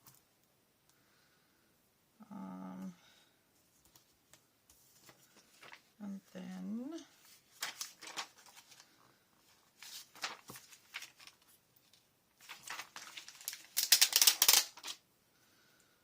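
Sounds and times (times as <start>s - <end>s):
paper rustling and crinkling: 3.7s - 15.0s.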